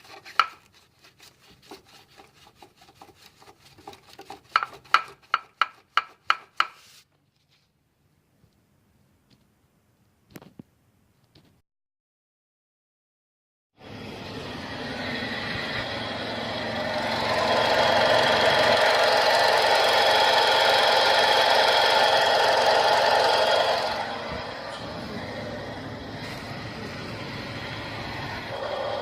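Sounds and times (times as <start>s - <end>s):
car engine running: 13.8s - 29.0s
high-pitched squeal: 13.8s - 29.0s.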